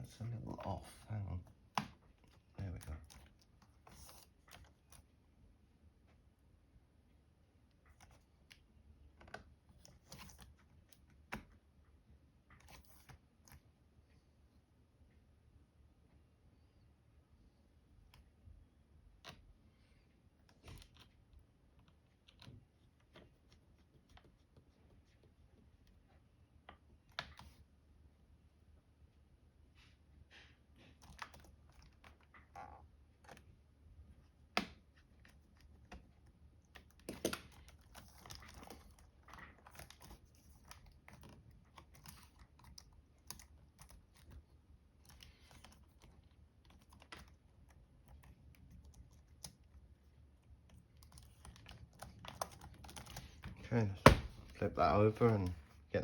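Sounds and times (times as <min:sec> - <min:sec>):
clicks of plastic laptop parts: 0:36.8 - 0:44.3.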